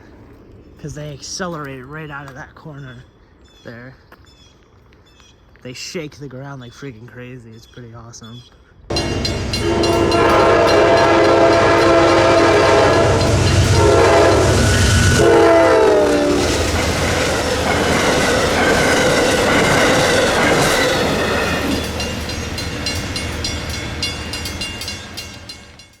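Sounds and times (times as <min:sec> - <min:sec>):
diesel engine rumble: 0:08.9 - 0:25.7
locomotive horn chord: 0:08.9 - 0:25.9
train wheels clacking: 0:08.9 - 0:26.0.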